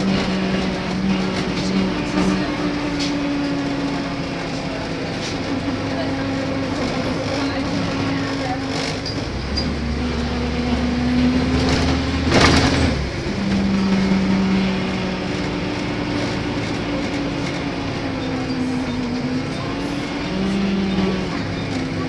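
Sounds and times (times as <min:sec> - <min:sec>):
bus engine droning: 0:00.0 - 0:22.0.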